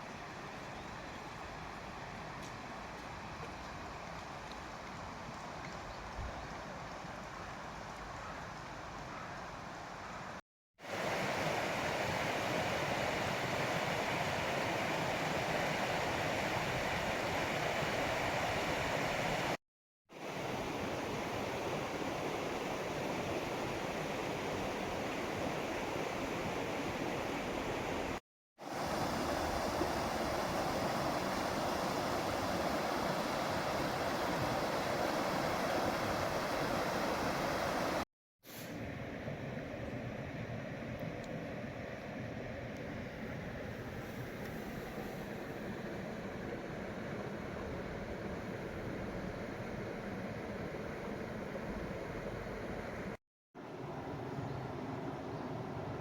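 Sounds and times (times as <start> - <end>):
river flowing over rocks: 28.7 - 38.0.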